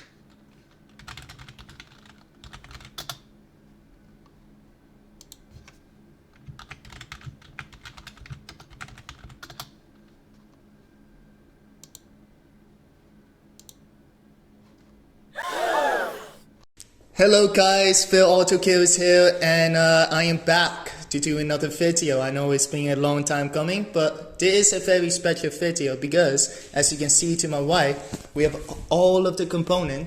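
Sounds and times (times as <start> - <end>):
computer keyboard typing: 0.3 - 3.2, 6.4 - 9.7.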